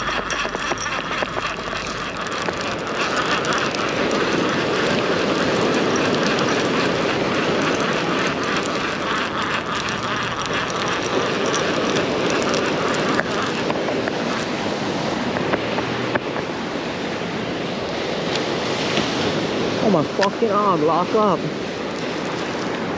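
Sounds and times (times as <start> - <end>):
fine rapid ticking: 0.0 - 14.8, 21.5 - 22.9
ocean surf rushing: 13.6 - 22.9.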